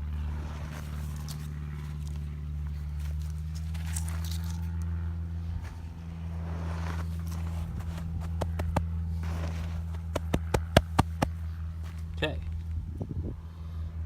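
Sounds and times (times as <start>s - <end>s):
low motor hum: 0.0s - 14.0s
dirt scraped into hole: 6.3s - 10.7s.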